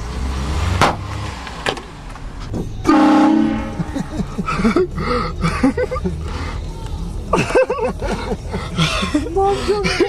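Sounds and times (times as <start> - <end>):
low vehicle rumble: 0.0 - 10.0
air horn blast: 2.8 - 3.9.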